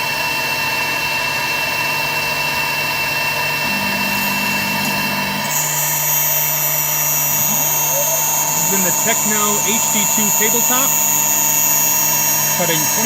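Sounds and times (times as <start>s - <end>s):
router spindle high whine: 0.0s - 13.0s
low hum: 3.6s - 9.0s.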